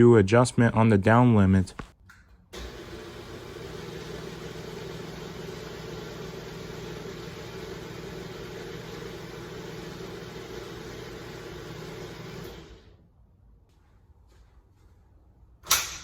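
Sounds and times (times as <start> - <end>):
garage door opener motor hum: 2.5 - 13.1.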